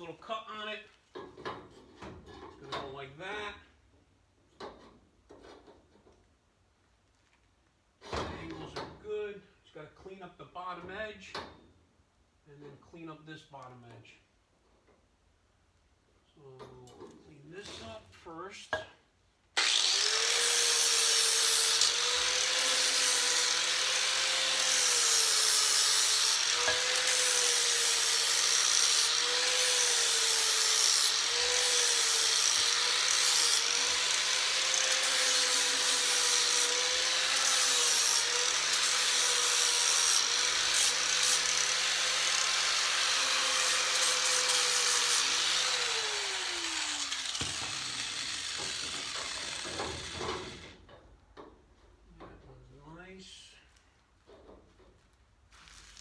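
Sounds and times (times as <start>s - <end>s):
grinder motor winding down: 19.6s - 39.6s, 40.2s - 50.7s
power grinder on steel: 19.6s - 50.8s.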